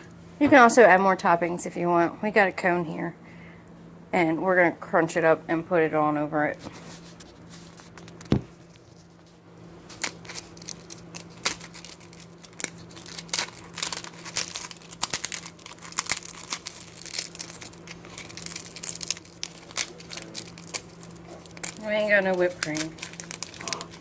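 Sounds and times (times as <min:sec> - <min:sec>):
low steady hum: 0:00.0 - 0:24.0
ice cream cone crackling: 0:06.9 - 0:24.0.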